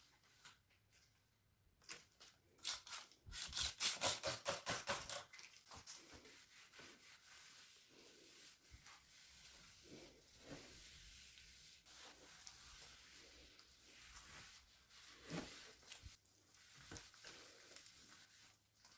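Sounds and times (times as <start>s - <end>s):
faint rubbing and handling: 5.3s - 18.9s.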